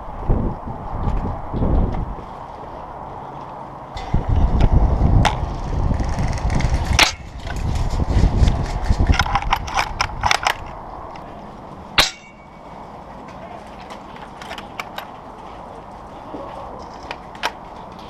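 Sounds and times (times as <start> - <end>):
heavy low rumble: 3.9 - 13.9.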